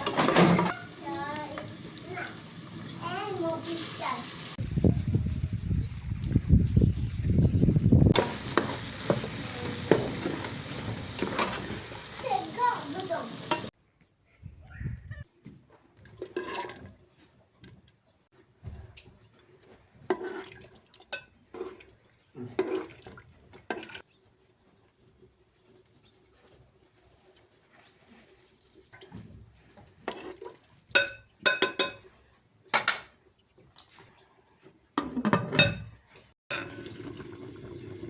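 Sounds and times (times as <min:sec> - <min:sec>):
metal kitchenware clattering: 0:00.0 - 0:01.0, 0:31.0 - 0:32.1, 0:35.0 - 0:36.8.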